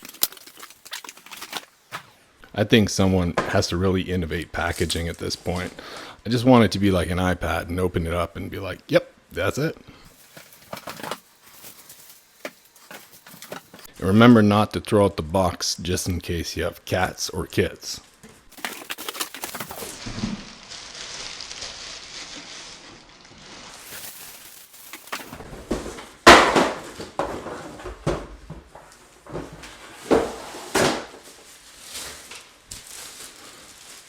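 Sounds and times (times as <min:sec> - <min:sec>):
parts knocking and clattering: 0:00.0 - 0:02.1, 0:10.2 - 0:13.9, 0:18.2 - 0:20.4
packaging rustling: 0:00.0 - 0:02.2, 0:10.1 - 0:13.9, 0:18.0 - 0:27.2, 0:30.1 - 0:34.0.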